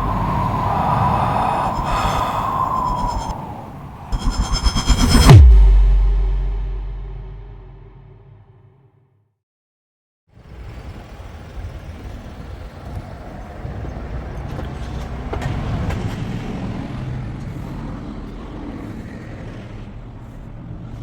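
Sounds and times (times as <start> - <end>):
rumbling vehicle passing: 1.0 - 8.0.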